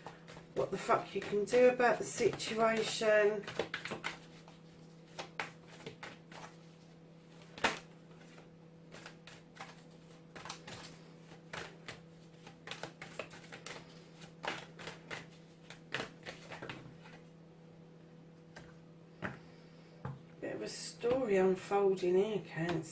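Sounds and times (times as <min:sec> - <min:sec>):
cards being shuffled: 0:00.0 - 0:17.3.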